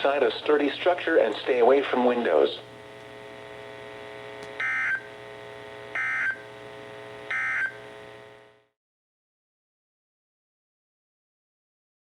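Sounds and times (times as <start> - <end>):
radio hum: 0.0 - 8.7
two-tone digital data bursts: 4.6 - 5.1, 6.0 - 6.4, 7.3 - 7.8.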